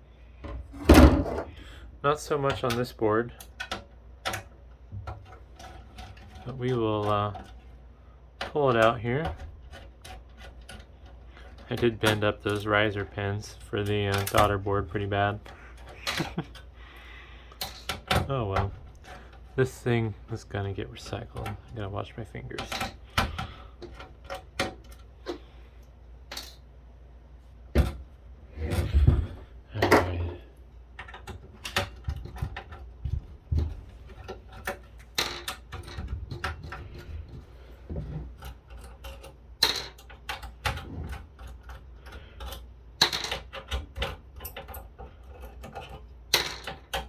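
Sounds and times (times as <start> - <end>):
clicks and scrapes of metal parts: 2.4 - 7.8, 8.4 - 25.5, 26.3 - 26.7, 33.6 - 47.0.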